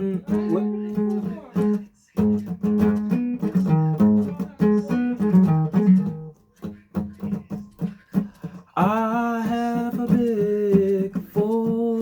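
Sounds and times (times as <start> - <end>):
guitar plucked notes and chords: 0.0 - 12.0.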